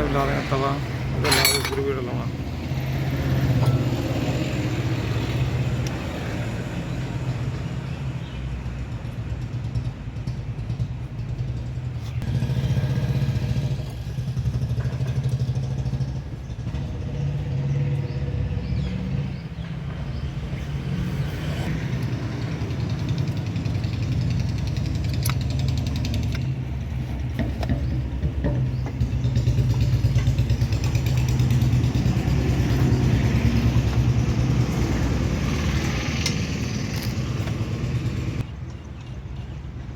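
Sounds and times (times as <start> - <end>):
vehicle engine rumbling: 0.0 - 39.6
sharp metallic clinks: 1.2 - 2.3, 3.4 - 4.7.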